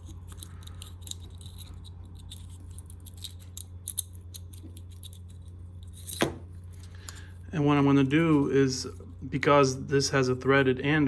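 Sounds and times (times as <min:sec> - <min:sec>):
bracket and wires rattling: 0:00.0 - 0:07.4
steady low hum: 0:00.0 - 0:11.0.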